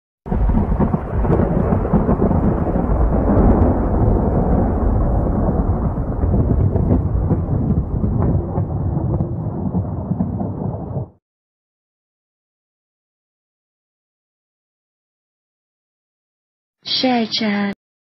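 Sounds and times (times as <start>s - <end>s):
low rumbling noise: 0.3s - 11.2s.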